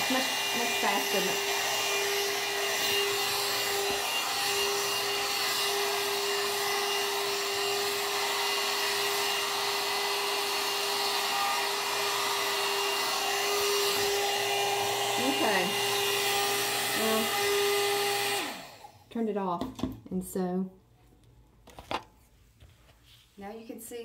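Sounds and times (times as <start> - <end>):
hair dryer running: 0.0 - 19.1.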